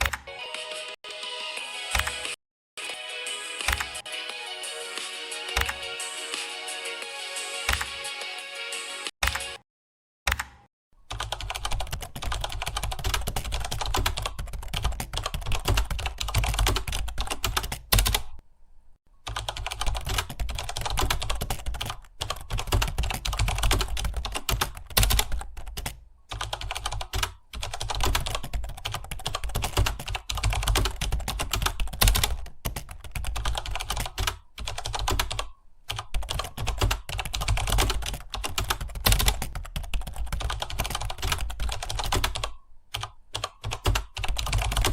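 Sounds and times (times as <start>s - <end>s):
fast keyboard typing: 3.6s - 4.0s, 5.5s - 6.4s, 11.1s - 18.4s, 19.2s - 44.9s.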